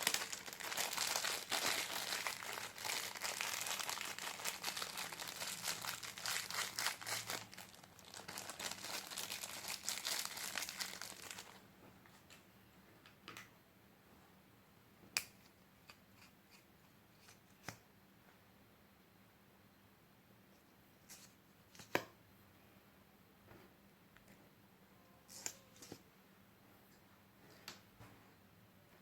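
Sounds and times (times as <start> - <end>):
slime crackling and crinkling: 0.0 - 11.6.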